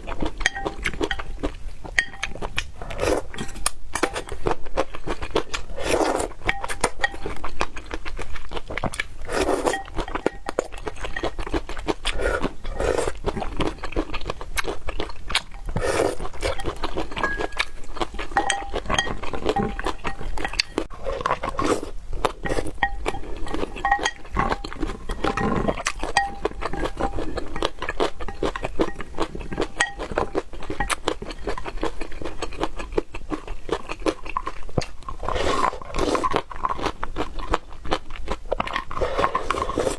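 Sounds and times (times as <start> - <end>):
person chewing food: 0.0 - 39.9
utensils clinking on dishes: 0.3 - 2.5, 3.2 - 4.4, 6.4 - 7.4, 9.6 - 11.5, 15.6 - 20.9, 22.4 - 31.6.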